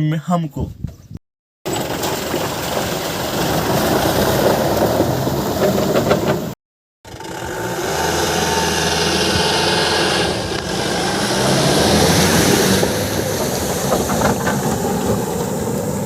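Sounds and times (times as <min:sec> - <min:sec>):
diesel engine running under load: 0:07.1 - 0:16.0.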